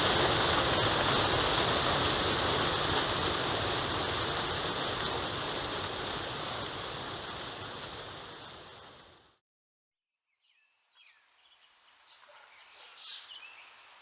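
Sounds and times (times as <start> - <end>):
waterfall roaring: 0.0 - 9.2.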